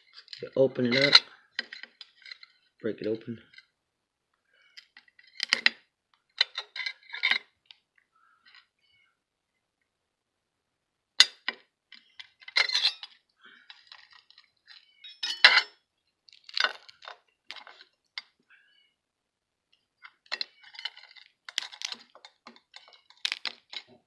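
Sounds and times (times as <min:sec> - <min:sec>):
crab shell cracking and crunching: 0:16.3 - 0:18.3, 0:20.4 - 0:23.8.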